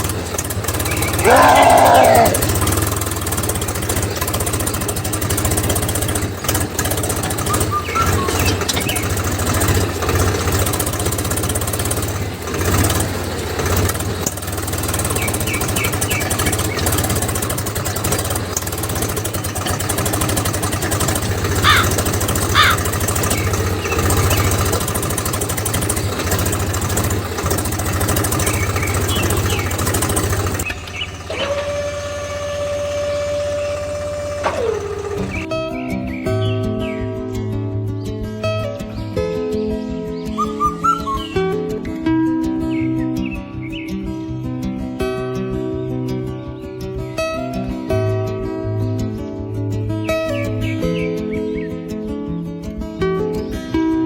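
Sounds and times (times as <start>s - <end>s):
small motor humming and rattling: 0.0s - 35.5s
short squeaks: 7.2s - 9.3s, 30.6s - 35.5s, 40.4s - 41.6s.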